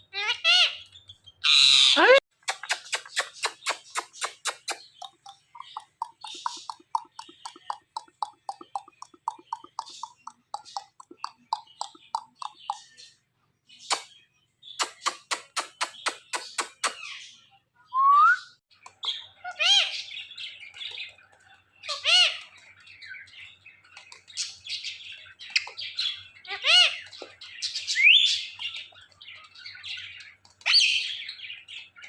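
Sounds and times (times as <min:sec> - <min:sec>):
parrot screeching: 0:00.2 - 0:00.8, 0:01.4 - 0:02.2
parrot clicking and chattering: 0:02.3 - 0:13.1, 0:14.8 - 0:17.0, 0:18.8 - 0:30.8.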